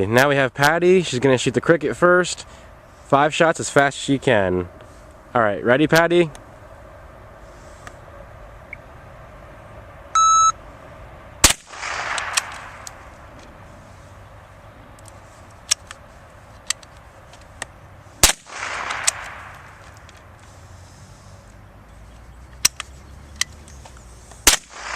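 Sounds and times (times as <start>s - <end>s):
shot timer beep: 10.2s - 10.6s
rifle shots: 11.4s - 13.1s, 18.2s - 20.1s, 24.4s - 24.9s
rifle bolt clicks: 11.8s - 13.0s, 16.6s - 20.2s.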